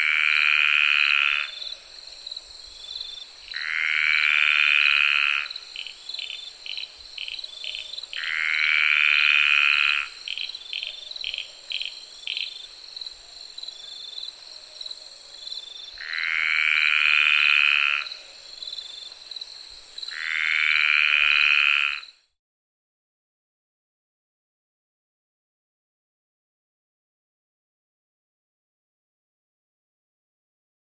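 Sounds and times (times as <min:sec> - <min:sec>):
frogs calling: 0:00.0 - 0:01.9, 0:02.9 - 0:12.7, 0:15.9 - 0:18.9, 0:20.0 - 0:22.2
distant insects droning: 0:00.0 - 0:22.4.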